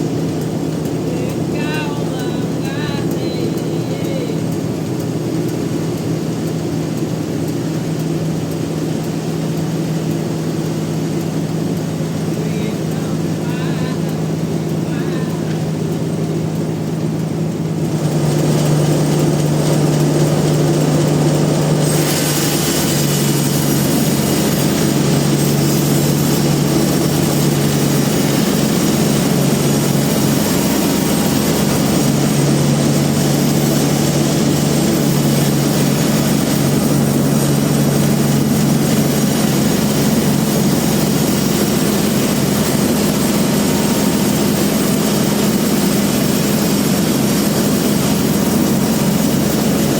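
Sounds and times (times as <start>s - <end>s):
bandsaw machine hum: 0.0s - 49.9s
saw blade hissing: 21.6s - 49.9s.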